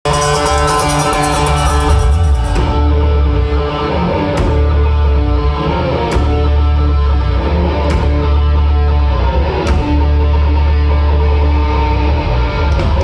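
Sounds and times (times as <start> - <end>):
heavy metal band playing live: 0.0 - 13.0
cymbal crashes: 0.1 - 3.4.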